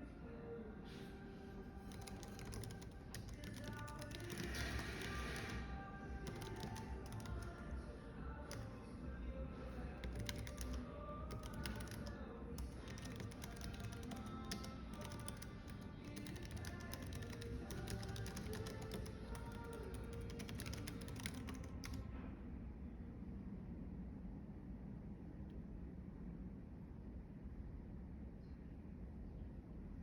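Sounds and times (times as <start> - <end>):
background music: 0.0 - 22.0
keyboard typing: 1.7 - 22.1.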